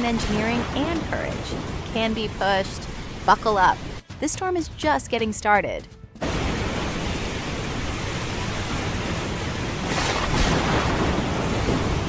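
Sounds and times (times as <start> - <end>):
breaking waves: 6.2 - 12.0
rushing wind: 6.2 - 12.0.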